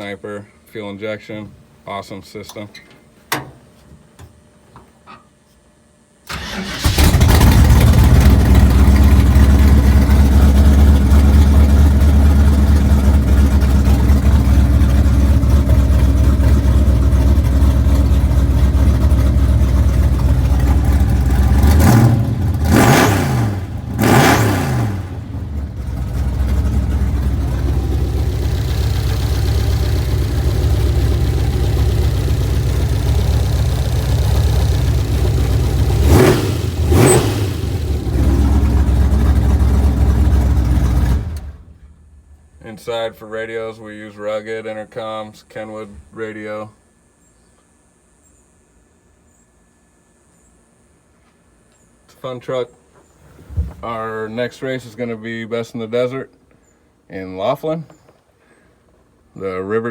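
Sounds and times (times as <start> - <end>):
engine revving: 6.3 - 41.7
car engine starting: 6.3 - 42.6
loud engine idling: 6.3 - 42.6.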